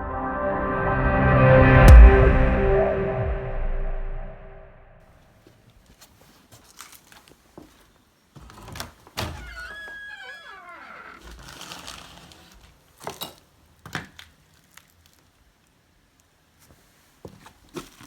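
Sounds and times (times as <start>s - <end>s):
door hinges creaking: 8.6s - 12.2s.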